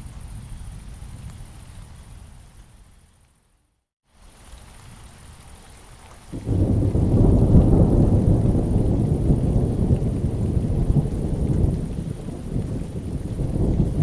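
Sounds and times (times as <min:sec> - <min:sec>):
rain hiss: 0:00.0 - 0:14.0
thunder rumbling: 0:06.4 - 0:14.0.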